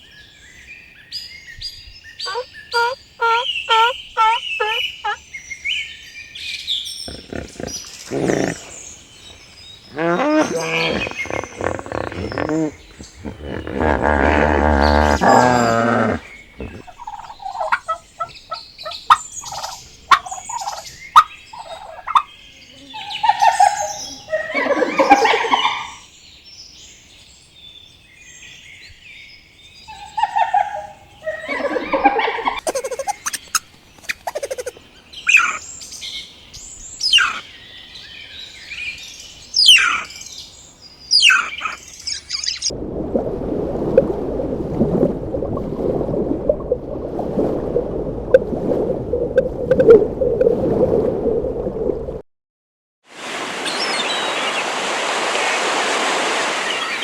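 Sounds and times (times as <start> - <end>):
birds chirping and whistling: 1.1 - 24.5, 32.8 - 36.0, 36.6 - 42.7
louder long bird calls: 2.1 - 5.8, 7.0 - 26.0, 34.3 - 35.8, 36.8 - 37.6, 39.6 - 40.3, 41.1 - 42.7.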